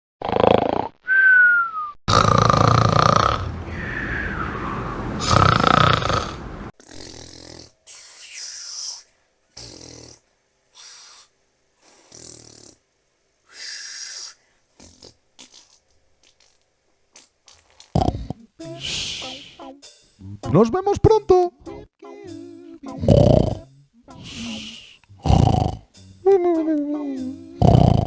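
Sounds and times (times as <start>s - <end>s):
cartoon snoring: 0.2s - 1.2s, 2.1s - 12.9s, 13.5s - 16.6s, 17.2s - 19.6s, 22.9s - 28.0s
falling whistling tone: 1.1s - 2.0s, 3.7s - 5.4s.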